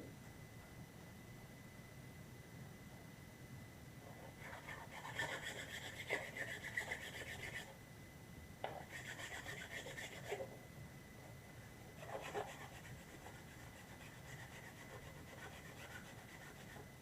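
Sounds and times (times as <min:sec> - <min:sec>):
sandpaper rubbing on plastic: 0:08.9 - 0:10.4, 0:12.0 - 0:16.8.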